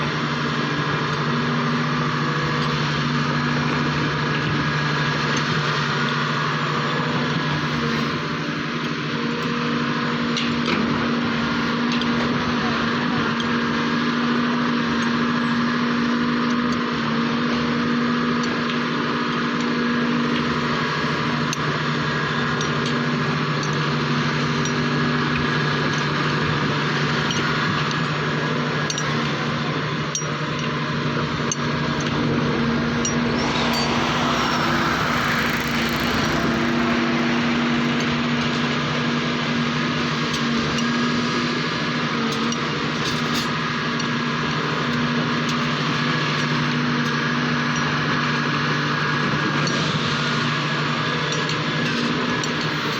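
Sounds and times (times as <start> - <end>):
excavator diesel engine running: 19.0 - 40.2
brief rushing noise: 32.8 - 37.8.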